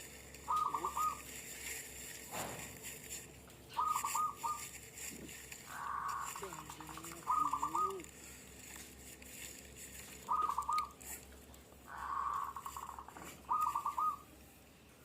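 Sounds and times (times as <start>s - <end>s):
dove cooing: 0.0s - 14.4s.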